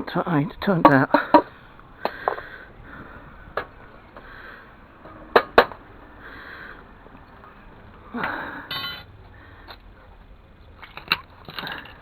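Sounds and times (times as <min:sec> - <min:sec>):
metal pieces clinking: 0:08.2 - 0:09.1.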